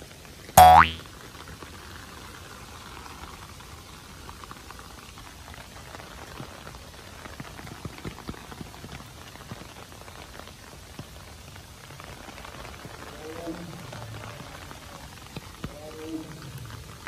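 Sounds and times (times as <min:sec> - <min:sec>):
steady rain hiss: 0:00.0 - 0:17.0
raindrops tapping: 0:04.2 - 0:17.0.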